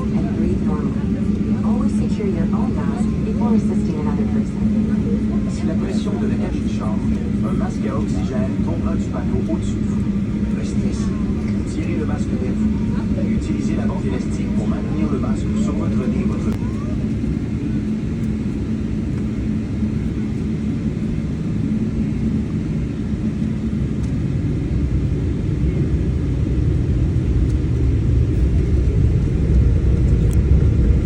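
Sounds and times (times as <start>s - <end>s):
airliner cabin engine rumble: 0.0s - 31.0s
steady hum: 0.0s - 31.0s.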